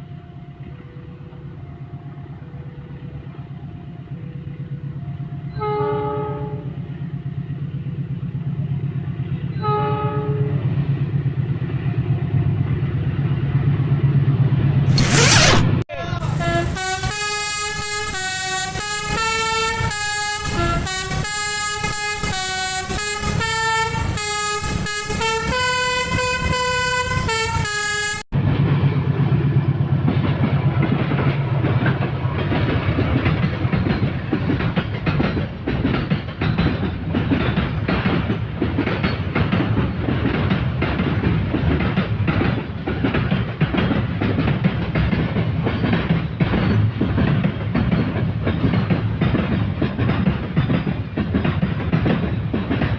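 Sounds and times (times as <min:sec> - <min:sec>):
multi-tone horn playing a tune: 0:16.2 - 0:28.2
train wheels clicking over rail joints: 0:16.3 - 0:28.2, 0:29.2 - 0:52.9.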